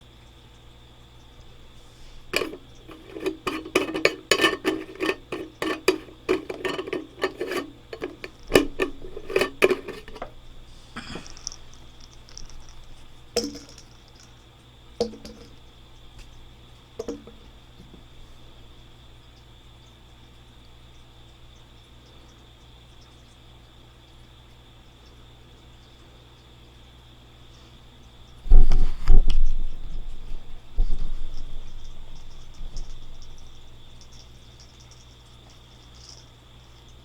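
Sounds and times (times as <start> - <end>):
ball rattling in plastic container: 2.3 - 10.4, 11.2 - 14.4, 15.0 - 15.6, 17.0 - 17.4.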